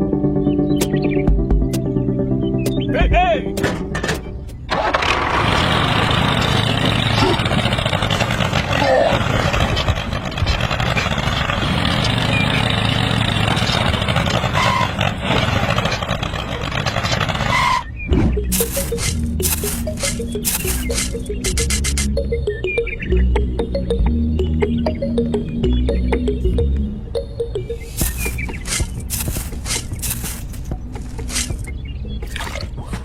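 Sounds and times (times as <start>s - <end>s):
small engine running: 4.7s - 22.8s, 27.6s - 31.7s.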